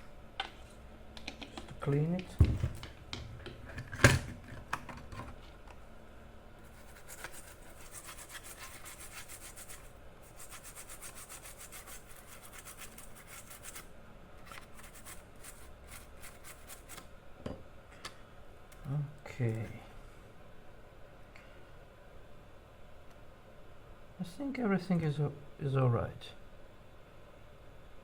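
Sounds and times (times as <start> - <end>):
rapid scrubbing of circuit board: 6.6 - 17.0.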